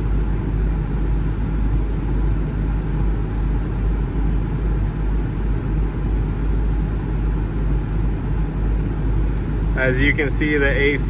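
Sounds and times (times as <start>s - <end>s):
car engine idling: 8.1s - 11.0s.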